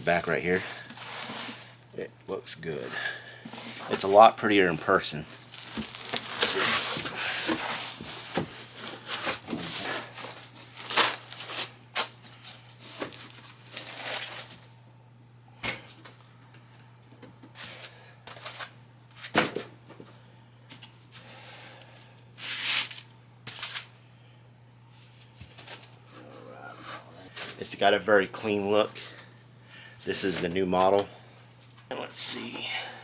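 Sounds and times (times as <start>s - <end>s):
packaging rustling: 5.2s - 12.1s, 12.8s - 14.6s.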